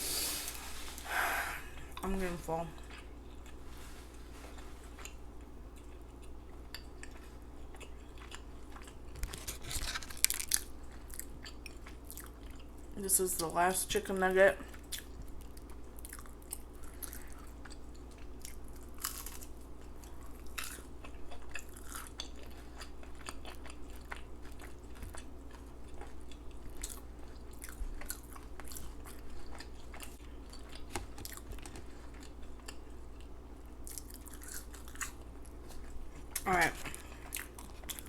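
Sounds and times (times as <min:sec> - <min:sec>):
person chewing with open mouth: 0:02.8 - 0:13.0, 0:14.7 - 0:38.0.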